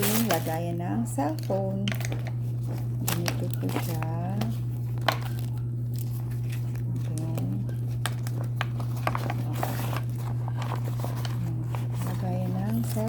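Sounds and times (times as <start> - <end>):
plastic crinkling: 0.0 - 13.0
steady low hum: 0.0 - 13.0.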